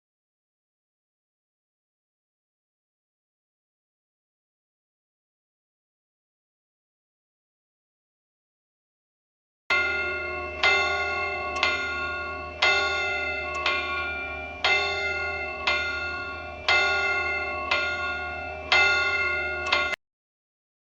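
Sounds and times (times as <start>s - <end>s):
bell striking the hour: 9.7s - 20.0s.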